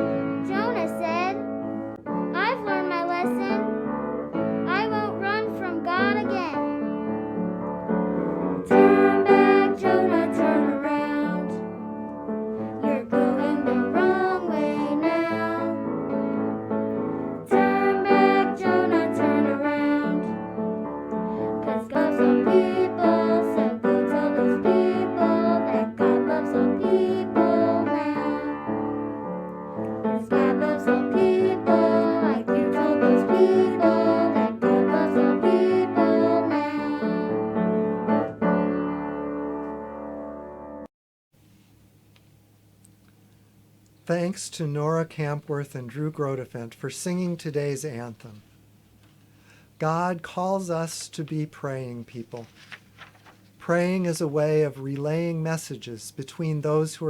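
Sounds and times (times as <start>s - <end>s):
piano music: 0.0s - 40.9s.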